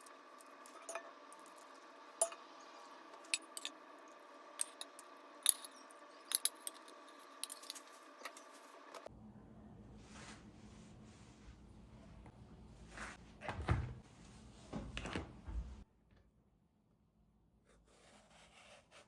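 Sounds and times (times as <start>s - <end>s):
faint hum: 0.0s - 18.3s
utensils and dishes clinking: 0.7s - 3.8s, 4.6s - 8.5s.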